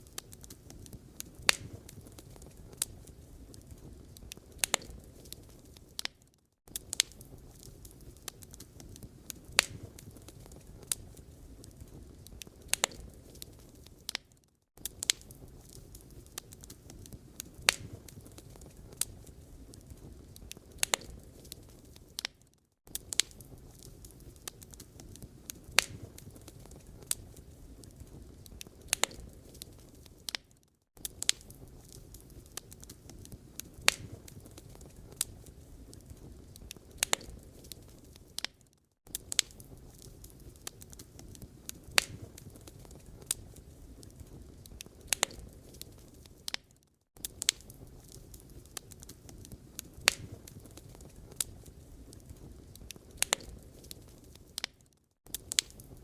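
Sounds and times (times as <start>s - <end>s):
wood fire crackling: 0.0s - 56.0s.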